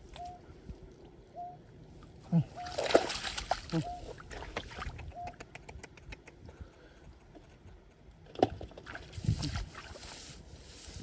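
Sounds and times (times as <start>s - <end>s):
splashing in shallow water: 2.3s - 5.3s, 8.3s - 11.0s.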